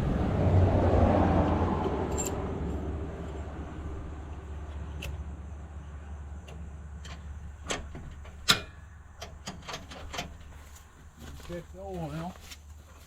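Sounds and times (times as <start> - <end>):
sharp clicks and knocks: 6.4 - 10.6.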